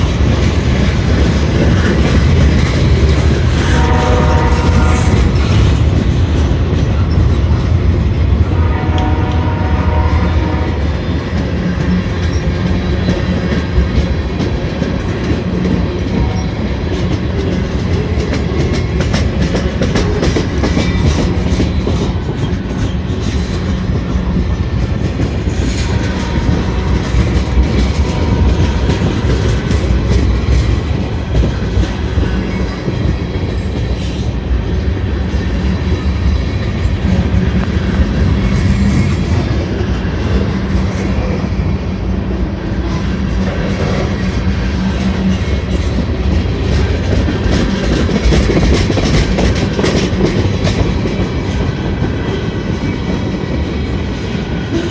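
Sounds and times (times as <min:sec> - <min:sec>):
heavy low train rumble: 0:00.0 - 0:54.9
train wheels clacking on rails: 0:00.0 - 0:54.9.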